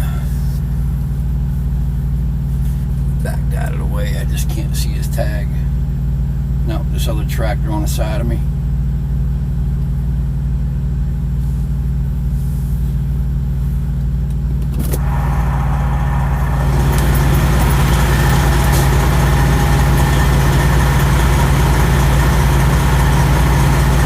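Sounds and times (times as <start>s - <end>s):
diesel truck engine idling: 15.0s - 24.0s.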